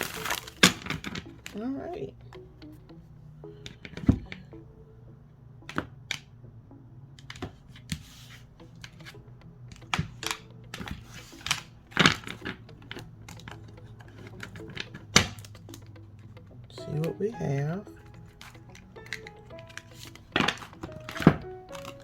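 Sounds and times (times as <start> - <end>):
card stock rustling: 0.0 - 1.6, 7.4 - 17.2, 17.9 - 22.0.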